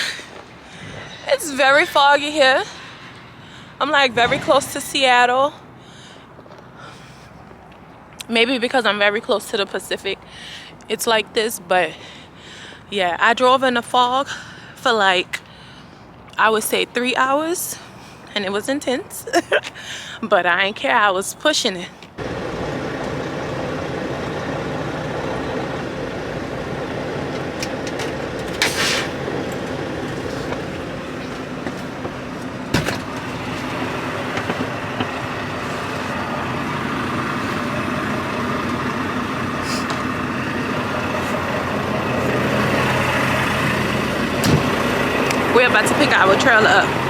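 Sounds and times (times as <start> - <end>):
diesel truck engine droning: 22.2 - 47.0.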